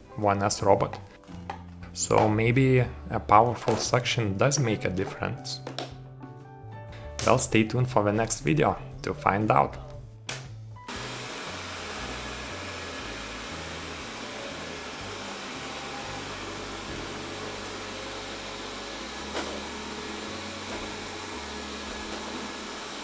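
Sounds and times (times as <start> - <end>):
robot vacuum cleaner running: 10.9 - 23.0.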